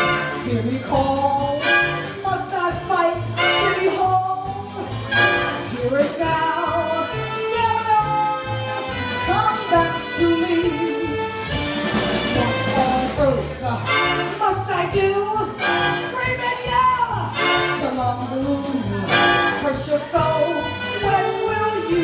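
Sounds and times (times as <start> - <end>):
jazz band with brass: 0.0 - 22.0
person singing: 5.7 - 11.4, 12.2 - 22.0.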